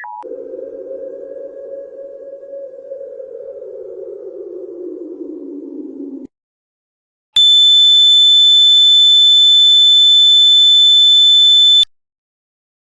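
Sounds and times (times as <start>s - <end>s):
high-pitched electronic alarm tone: 7.4s - 11.9s.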